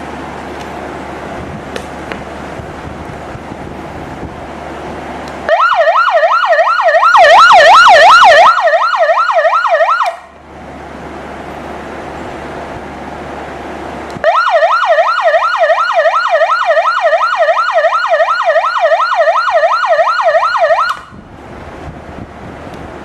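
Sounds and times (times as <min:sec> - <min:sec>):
warbling alarm siren: 0:05.5 - 0:10.4, 0:14.2 - 0:21.3.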